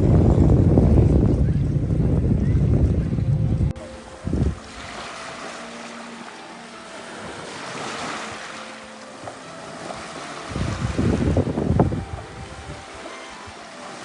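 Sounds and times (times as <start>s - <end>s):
wind buffeting microphone: 0.0s - 5.6s, 9.2s - 14.0s
sea waves washing on shore: 0.0s - 14.0s.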